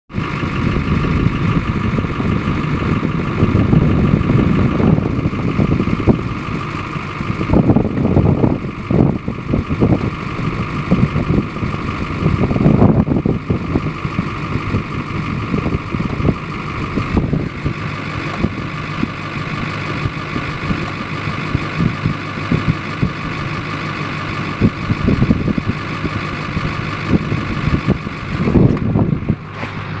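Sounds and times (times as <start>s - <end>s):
engine running: 0.1s - 30.0s.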